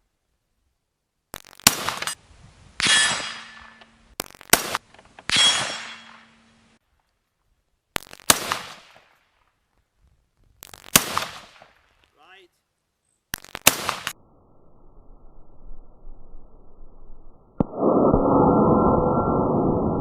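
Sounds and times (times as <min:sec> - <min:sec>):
rifle shots: 0:01.6 - 0:02.2, 0:02.8 - 0:06.5, 0:08.0 - 0:09.2, 0:10.7 - 0:11.9, 0:13.4 - 0:14.2
steel targets ringing: 0:02.8 - 0:03.9, 0:05.3 - 0:06.6.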